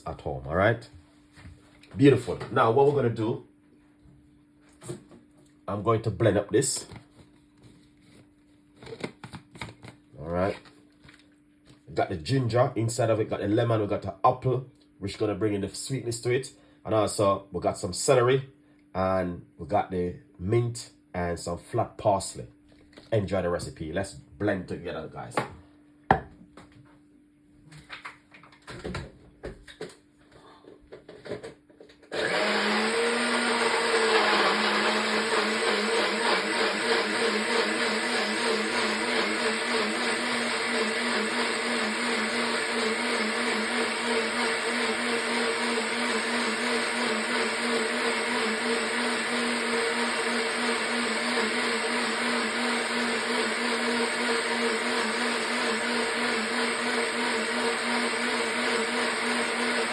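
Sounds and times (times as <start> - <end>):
blender motor running: 32.1 - 59.9.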